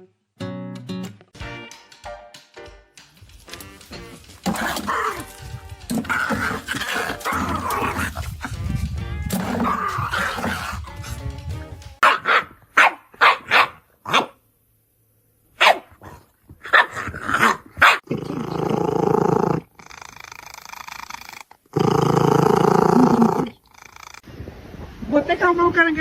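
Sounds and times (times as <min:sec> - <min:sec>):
dog growling: 0:04.4 - 0:12.0, 0:15.9 - 0:24.3
dog barking: 0:09.3 - 0:11.2, 0:12.0 - 0:14.4, 0:15.6 - 0:18.1.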